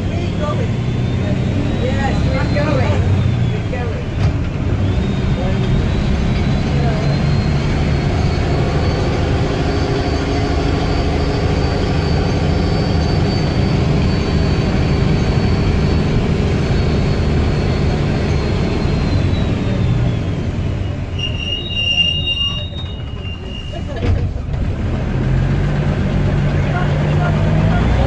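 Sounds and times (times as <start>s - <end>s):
bus engine running: 0.0s - 28.0s
high turbo whistle: 21.1s - 23.9s.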